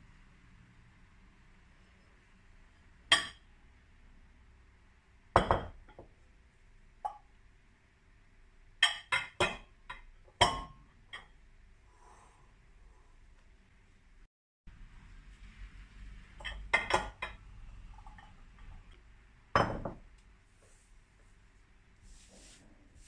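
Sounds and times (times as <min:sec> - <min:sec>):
kitchenware clinking and knocking: 0:05.4 - 0:06.2, 0:08.8 - 0:11.3, 0:16.4 - 0:18.9, 0:19.5 - 0:20.1.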